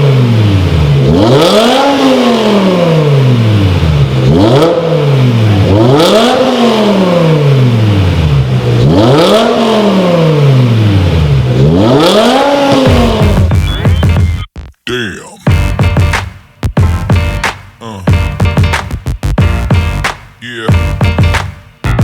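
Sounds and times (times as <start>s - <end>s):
car engine revving: 0.0s - 14.3s.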